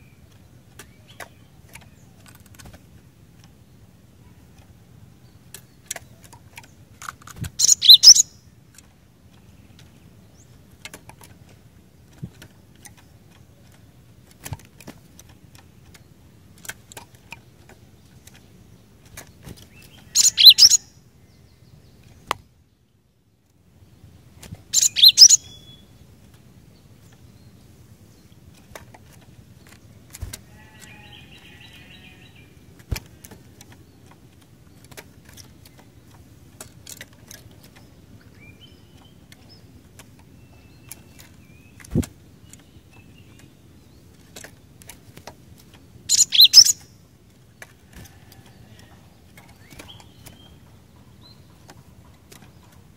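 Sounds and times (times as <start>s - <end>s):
bird calling rapid high notes: 7.6s - 8.2s.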